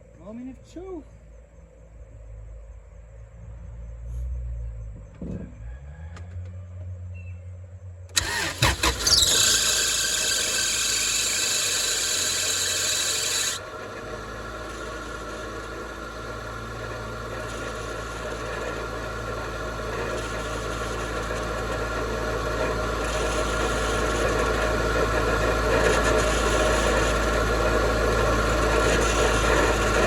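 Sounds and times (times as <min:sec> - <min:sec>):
car engine idling: 0:08.1 - 0:30.0
starter cranking engine: 0:08.1 - 0:30.0.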